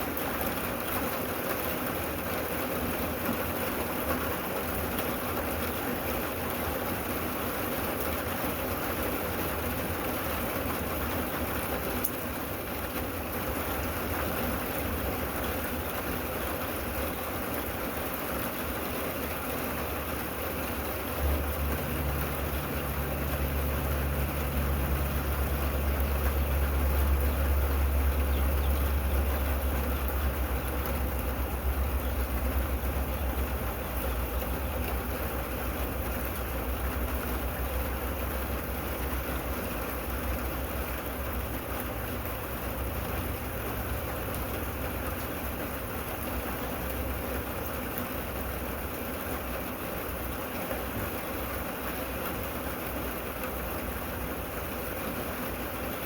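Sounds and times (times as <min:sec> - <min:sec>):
steady rain falling: 0:00.0 - 0:56.0
low steady rumble: 0:20.2 - 0:49.4.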